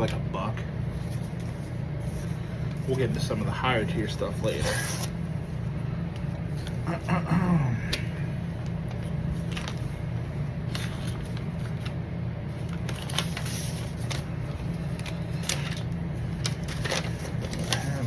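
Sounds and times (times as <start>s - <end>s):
steady low hum: 0.0s - 18.0s
packaging rustling and clicking: 12.6s - 18.0s.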